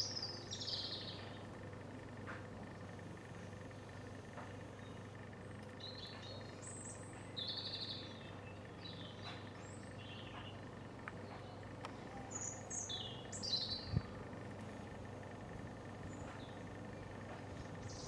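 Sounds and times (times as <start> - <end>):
faint steady hum: 0.0 - 18.0
small birds chirping: 5.8 - 14.2, 16.0 - 18.0.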